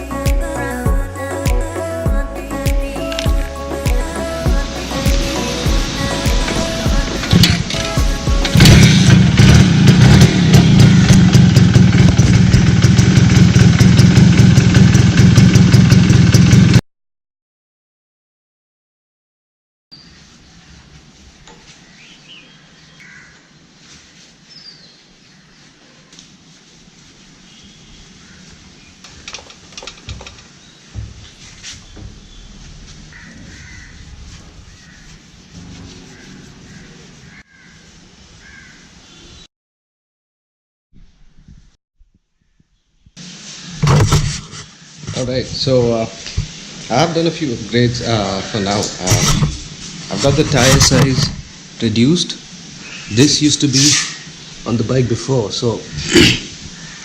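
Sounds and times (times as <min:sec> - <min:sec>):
outdoor background: 0:00.0 - 0:16.8, 0:19.9 - 0:39.5, 0:41.0 - 0:57.0
low thumps: 0:03.3 - 0:12.9
two-stroke engine idling: 0:05.7 - 0:16.8
crows cawing: 0:23.0 - 0:23.6, 0:28.2 - 0:29.4, 0:33.0 - 0:35.2, 0:36.0 - 0:38.9, 0:56.7 - 0:57.0.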